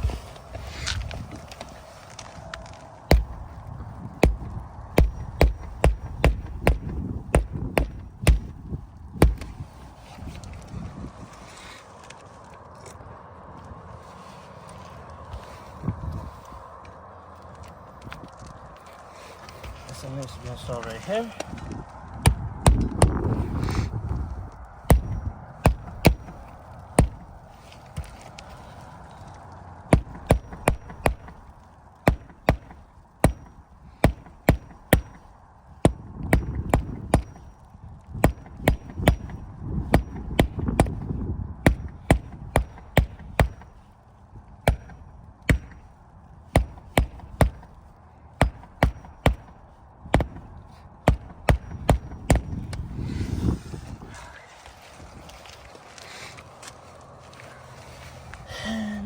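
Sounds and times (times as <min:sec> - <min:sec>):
hammer driving roofing nails: 0:03.1 - 0:03.6, 0:04.2 - 0:09.9, 0:24.9 - 0:28.2, 0:29.9 - 0:37.5, 0:38.2 - 0:43.9, 0:44.6 - 0:47.8, 0:48.4 - 0:53.2.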